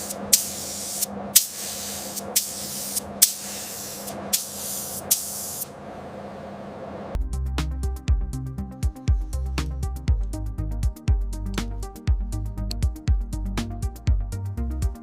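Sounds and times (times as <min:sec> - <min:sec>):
pressurised spray hissing: 0:00.0 - 0:05.7
electronic music with a beat: 0:07.2 - 0:15.0.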